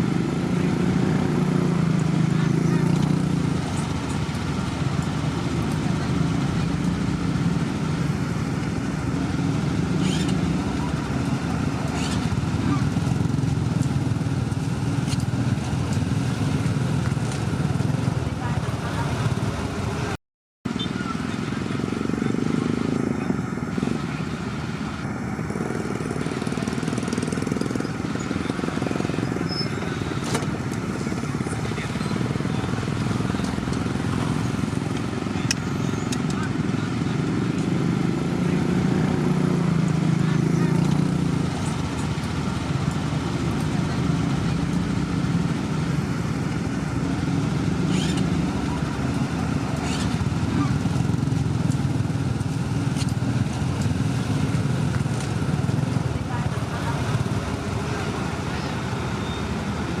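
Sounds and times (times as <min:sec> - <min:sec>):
truck diesel engine running: 0:20.8 - 1:00.0.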